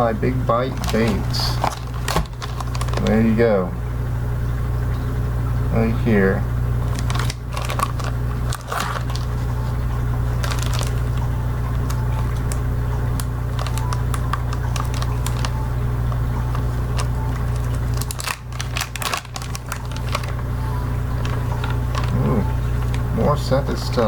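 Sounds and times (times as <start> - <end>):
steady low hum: 0.0 - 24.0
plastic bag crinkling: 0.5 - 3.4, 6.8 - 23.2.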